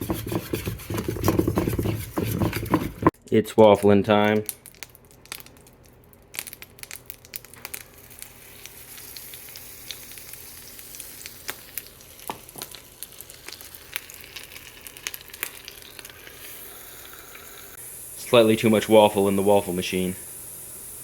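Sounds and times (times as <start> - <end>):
waffle batter sizzling: 4.5 - 21.0.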